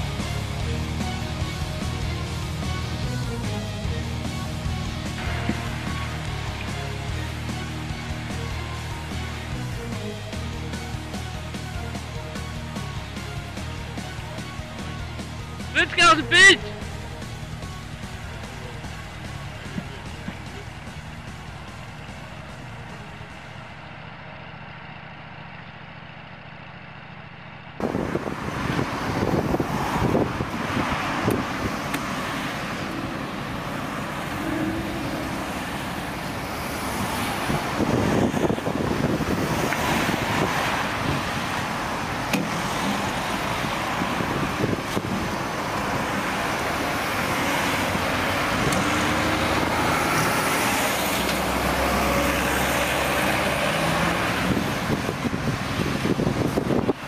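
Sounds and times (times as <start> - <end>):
heavy machinery engine hum: 0.0 - 16.0, 16.6 - 57.0
rough engine clatter with knocks: 18.2 - 23.9, 37.5 - 45.4, 47.9 - 49.2.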